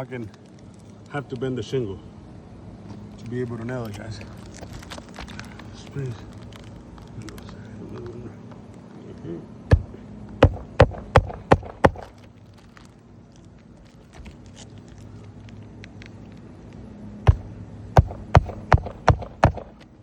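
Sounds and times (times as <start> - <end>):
hammer driving nails into shingle: 9.7 - 12.3, 17.3 - 19.9.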